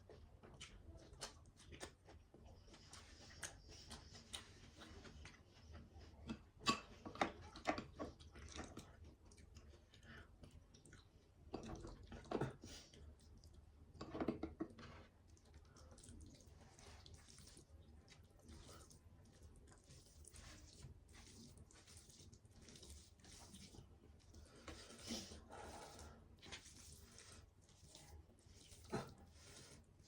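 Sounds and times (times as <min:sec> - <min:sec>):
person chewing wet mouth smacks: 0:00.6 - 0:04.5.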